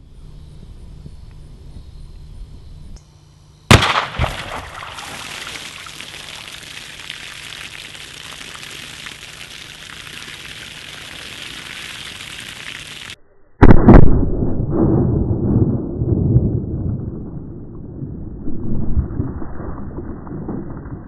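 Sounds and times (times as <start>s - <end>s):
loud gunshot bang: 3.7s - 5.2s, 13.6s - 15.1s
water spilling and trickling: 4.3s - 13.2s.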